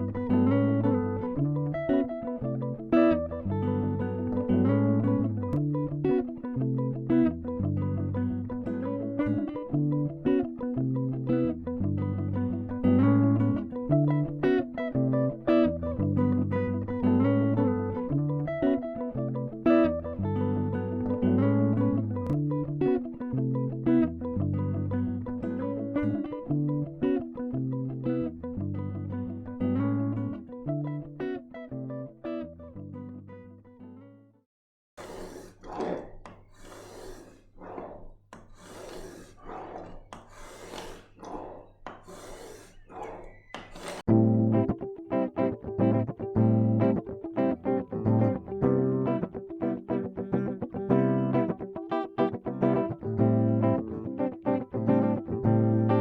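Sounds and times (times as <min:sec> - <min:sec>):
plucked guitar: 0:00.0 - 0:34.4, 0:44.1 - 0:56.0
rasping strokes on wood: 0:35.0 - 0:44.1.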